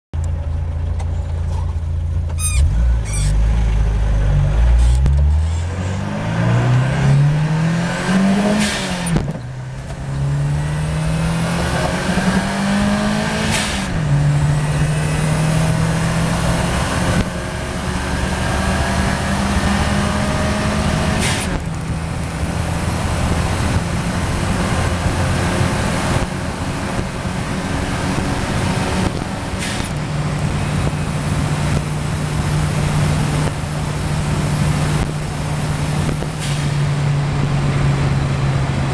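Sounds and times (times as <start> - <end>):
turbocharged car engine revving: 2.3 - 38.9.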